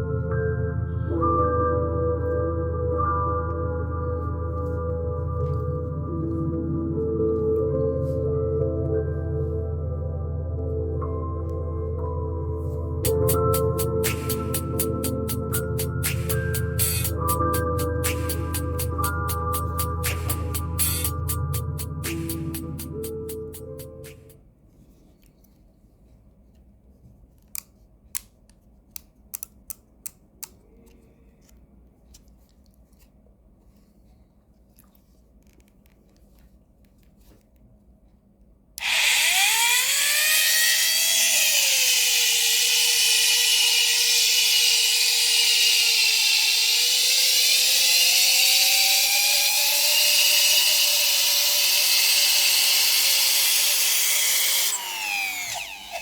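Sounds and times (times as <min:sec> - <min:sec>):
rotary tool whining: 0:13.1 - 0:24.4, 0:38.8 - 0:56.0.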